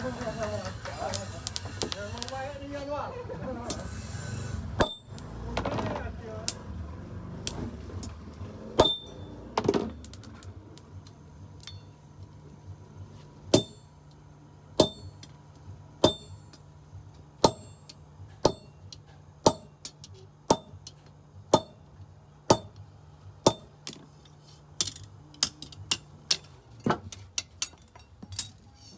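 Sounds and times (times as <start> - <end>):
hammer blows on metal: 3.7 - 5.5, 8.8 - 9.4, 16.0 - 16.6, 17.4 - 19.9, 20.5 - 20.9, 21.6 - 21.9.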